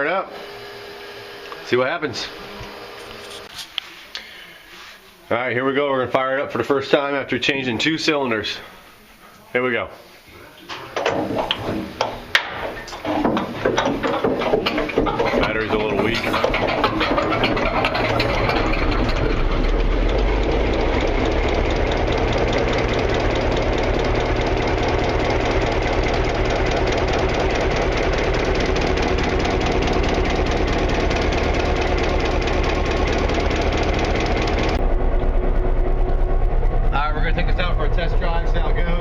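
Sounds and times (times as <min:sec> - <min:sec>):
diesel locomotive engine idling: 0:11.3 - 0:39.0.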